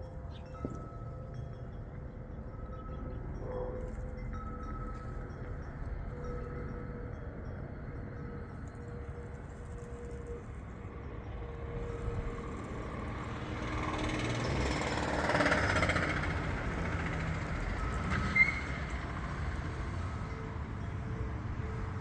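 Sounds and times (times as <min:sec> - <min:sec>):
small two-stroke engine running: 0:12.8 - 0:20.3.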